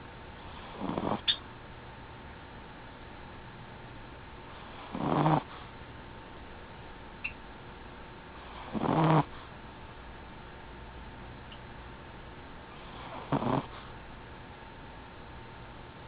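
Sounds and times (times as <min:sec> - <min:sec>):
dog snoring: 0:00.4 - 0:01.4, 0:04.5 - 0:05.7, 0:08.4 - 0:09.5, 0:12.8 - 0:13.9.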